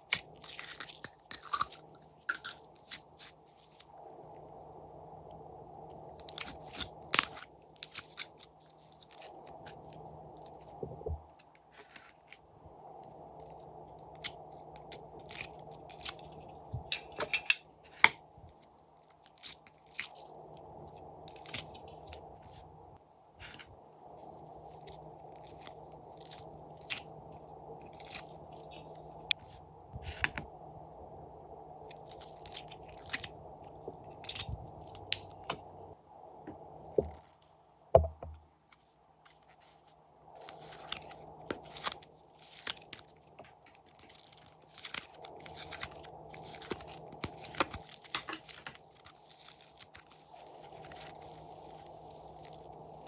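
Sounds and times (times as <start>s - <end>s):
slime crackling and popping: 40.4s - 53.0s.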